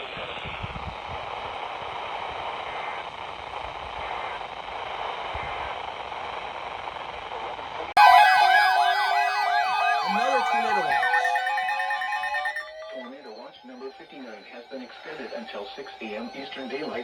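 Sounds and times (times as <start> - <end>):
steady tones: 8.0 - 13.0
siren-like alert tone: 8.0 - 13.1.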